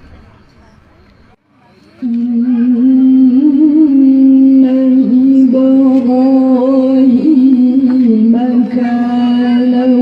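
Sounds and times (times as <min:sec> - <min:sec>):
girl reciting melodically: 0:02.0 - 0:10.0.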